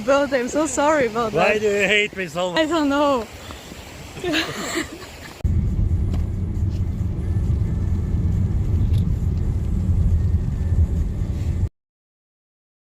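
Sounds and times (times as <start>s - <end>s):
car rumble from inside cabin: 5.4s - 11.7s.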